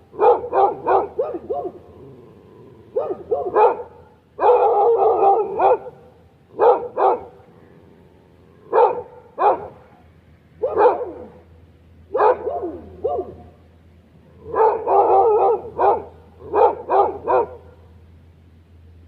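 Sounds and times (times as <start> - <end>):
dog barking: 0.1 - 1.8, 2.9 - 7.4, 8.7 - 9.9, 10.6 - 11.4, 12.1 - 13.5, 14.4 - 17.8.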